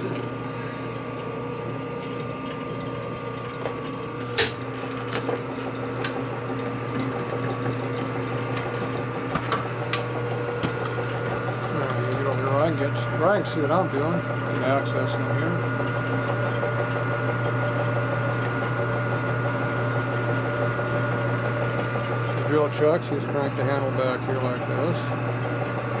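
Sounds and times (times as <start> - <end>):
metal lathe humming: 0.0 - 26.0.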